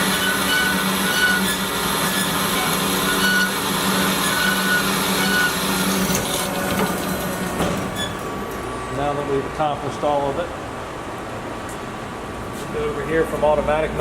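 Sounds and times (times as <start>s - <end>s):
band saw hum and blade whine: 0.0s - 8.6s.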